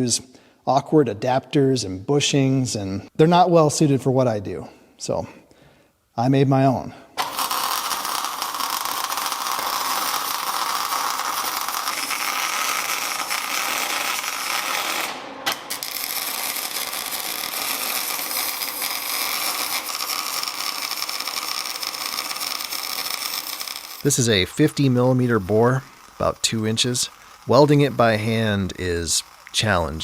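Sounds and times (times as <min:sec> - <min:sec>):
cutter grinding steel: 0:07.2 - 0:30.0.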